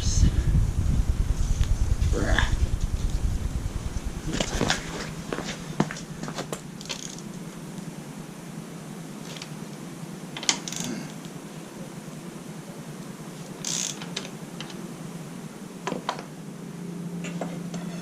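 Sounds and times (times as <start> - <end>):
ratchet clicking: 6.8 - 7.2, 10.4 - 10.9, 13.6 - 14.1.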